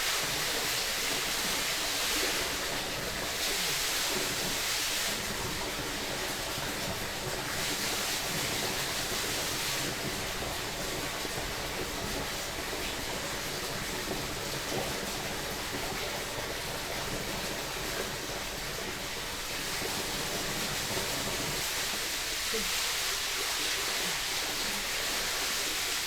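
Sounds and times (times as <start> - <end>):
stream rushing and babbling: 12.5 - 26.0.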